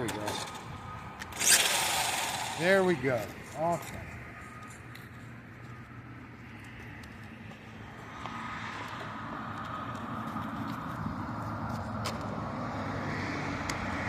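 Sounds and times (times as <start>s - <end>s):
rc truck motor whine: 1.2s - 2.8s.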